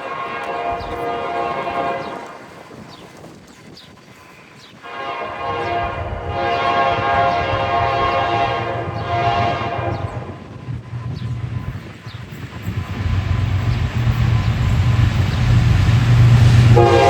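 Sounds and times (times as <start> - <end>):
locomotive horn blast: 0.0 - 2.8, 4.8 - 10.4, 16.6 - 17.0
train rumbling: 0.0 - 17.0.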